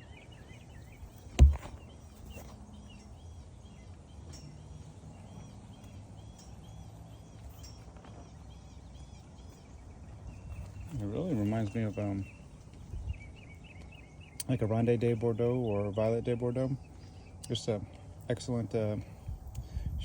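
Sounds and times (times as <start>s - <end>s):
small birds chirping: 0.0s - 20.0s
sharp loud knock: 1.4s - 1.8s.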